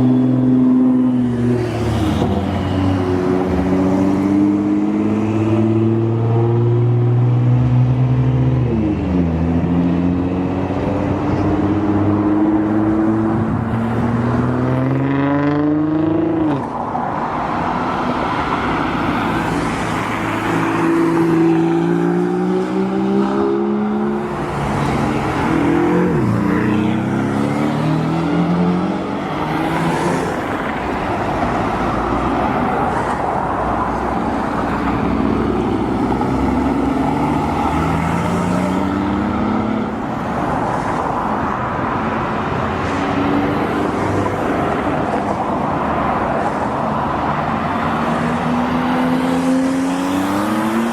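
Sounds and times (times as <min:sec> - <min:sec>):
sports car engines accelerating: 0:00.1 - 0:16.7, 0:47.8 - 0:50.9.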